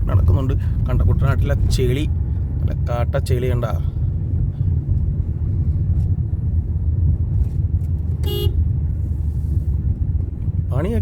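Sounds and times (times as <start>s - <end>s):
vehicle rumbling on road: 0.0s - 11.0s
horn toot: 8.2s - 8.6s.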